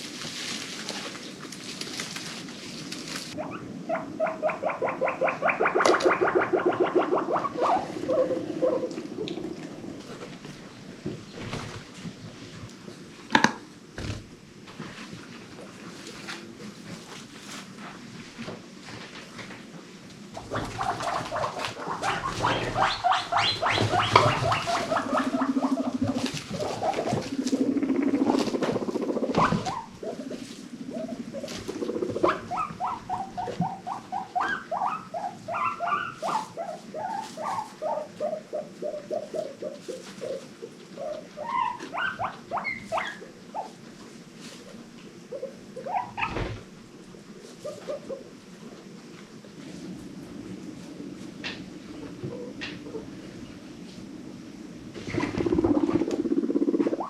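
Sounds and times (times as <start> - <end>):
guinea pigs squeaking: 3.3 - 9.0, 20.4 - 40.4, 41.0 - 43.8, 45.3 - 46.5
low buzzing purr: 55.0 - 57.0.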